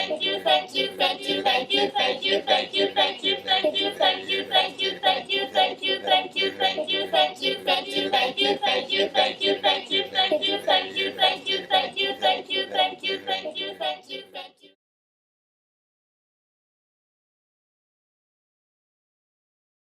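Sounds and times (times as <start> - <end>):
high voice chanting: 0.0 - 14.6.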